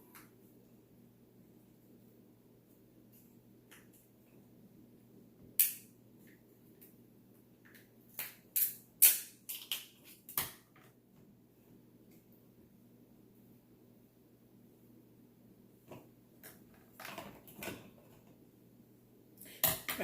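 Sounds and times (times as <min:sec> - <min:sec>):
crab shells cracking: 0:08.2 - 0:10.0.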